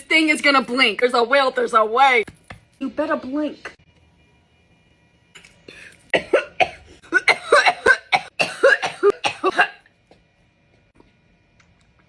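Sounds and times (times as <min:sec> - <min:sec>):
man coughing: 0:05.7 - 0:09.8.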